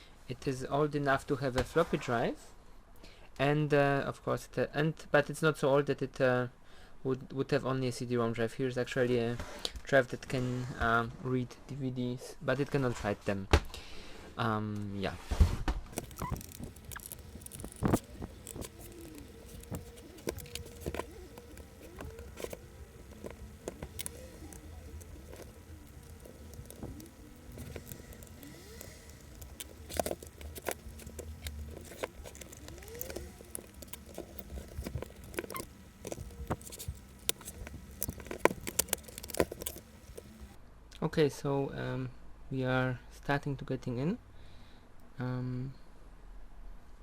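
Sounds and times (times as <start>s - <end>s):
clicks and knocks of plastic casing: 15.9s - 40.6s
short squeaks: 15.9s - 40.6s.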